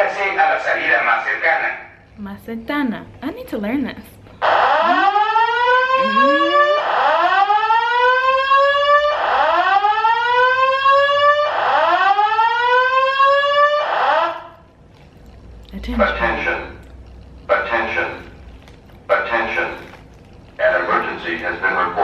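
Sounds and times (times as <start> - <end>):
spoken evacuation messages: 0.0 - 5.2, 6.0 - 6.8, 15.7 - 22.0
fire alarm whoop tone: 4.4 - 14.6.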